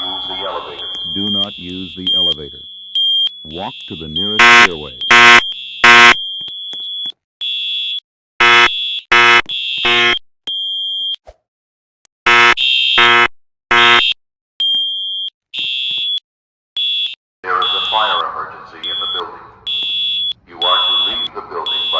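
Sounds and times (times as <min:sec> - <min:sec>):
buzzy alarm horn blasts: 0:00.0 - 0:06.4, 0:07.4 - 0:10.7, 0:12.3 - 0:14.2, 0:16.8 - 0:21.9
high steady alarm tone: 0:00.0 - 0:11.2, 0:12.3 - 0:16.2, 0:16.8 - 0:21.9.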